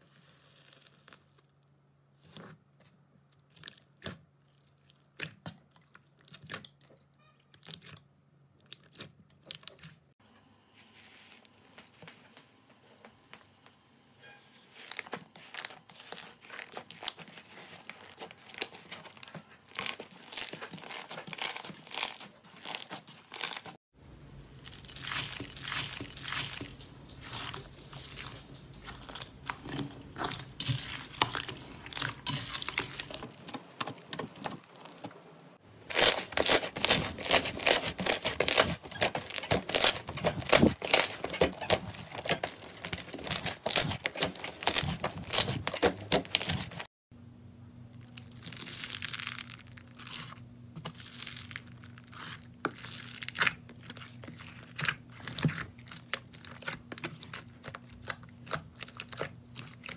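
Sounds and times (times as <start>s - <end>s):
slime crackling and popping: 14.8s - 23.8s, 24.5s - 35.0s, 35.9s - 46.8s.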